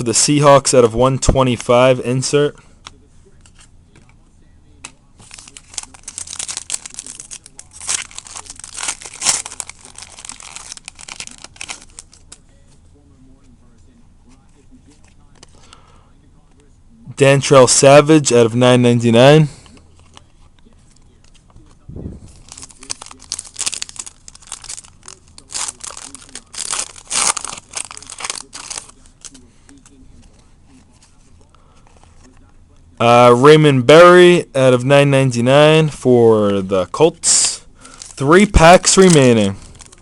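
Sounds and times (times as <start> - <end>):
card pack wrapper crinkling: 5.2 - 12.4, 20.0 - 29.9, 36.9 - 40.0.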